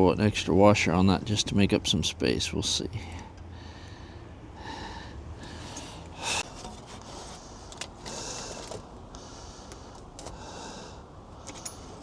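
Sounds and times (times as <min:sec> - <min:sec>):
metal rubbing and scraping: 0:06.4 - 0:08.1.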